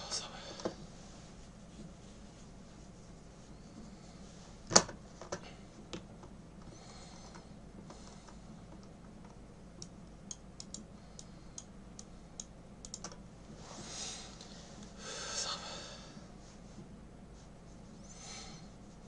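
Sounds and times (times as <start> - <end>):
steady low hum: 0.0 - 19.0
computer keys tapping: 7.2 - 13.2.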